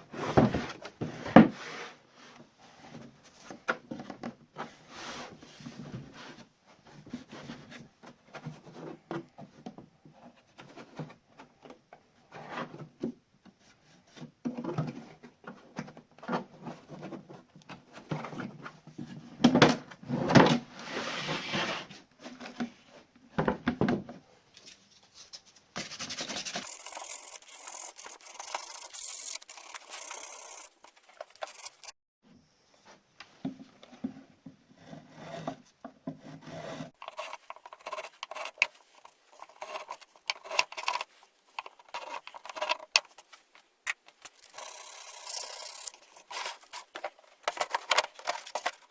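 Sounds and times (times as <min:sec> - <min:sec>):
hand tool scraping wood: 0:25.8 - 0:32.0, 0:34.8 - 0:43.3, 0:43.9 - 0:48.9.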